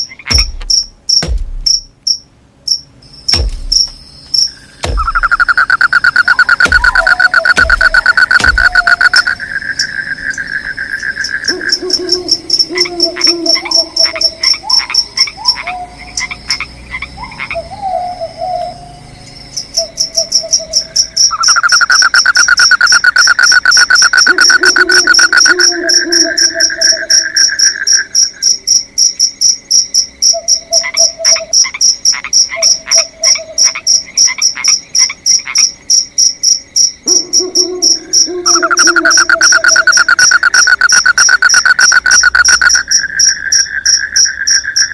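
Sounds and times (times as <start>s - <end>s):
high pulsing insect trill: 0.0s - 17.7s, 18.7s - 44.9s
frogs calling: 0.0s - 44.9s
spaced clicking calls: 3.4s - 15.6s, 21.3s - 26.4s, 37.1s - 43.4s.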